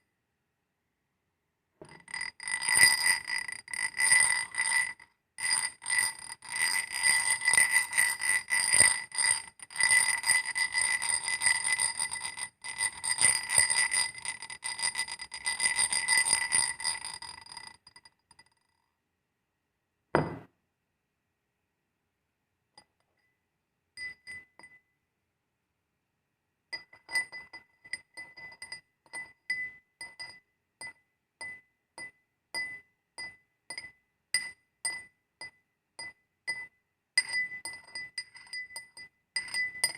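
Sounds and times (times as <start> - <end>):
sharp knock: 20.2 - 20.5.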